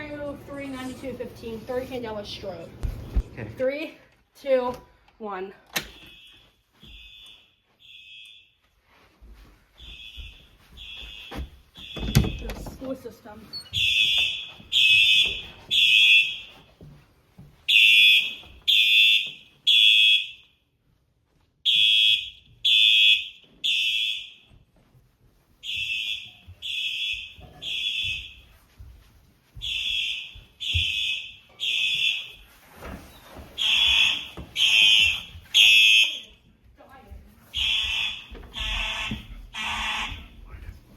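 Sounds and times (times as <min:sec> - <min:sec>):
fire alarm horn blasts: 0:05.8 - 0:08.7, 0:09.8 - 0:12.5, 0:13.7 - 0:16.7, 0:17.7 - 0:20.6, 0:21.6 - 0:24.5, 0:25.6 - 0:28.4, 0:29.6 - 0:32.5, 0:33.6 - 0:36.4, 0:37.6 - 0:40.5.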